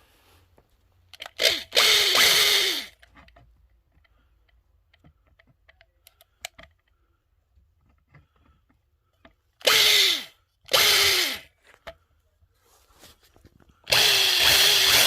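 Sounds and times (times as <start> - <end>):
power drill burst: 1.3 - 3.0, 9.6 - 11.5, 13.9 - 15.0
clicks and taps of parts handled: 3.0 - 9.6.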